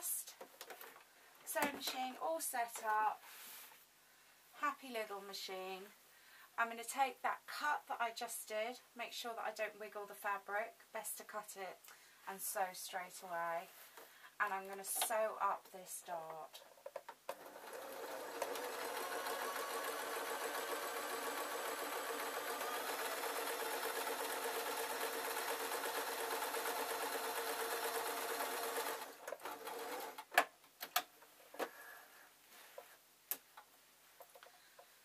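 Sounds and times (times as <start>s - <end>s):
sewing machine running: 17.3s - 30.2s.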